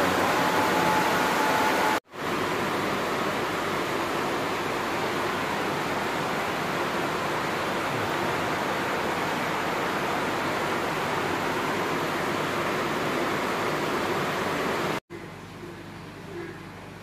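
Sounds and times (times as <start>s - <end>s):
steady rushing noise: 0.0s - 2.4s.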